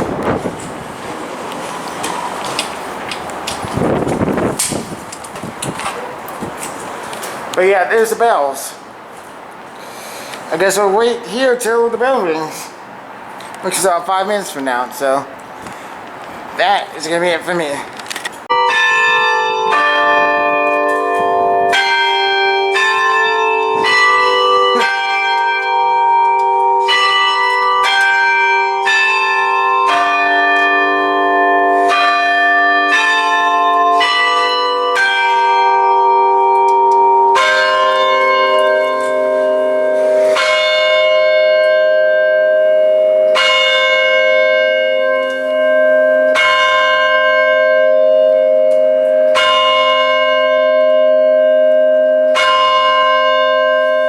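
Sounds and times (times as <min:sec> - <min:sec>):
tower bells playing slow melody: 0:18.5 - 0:54.0.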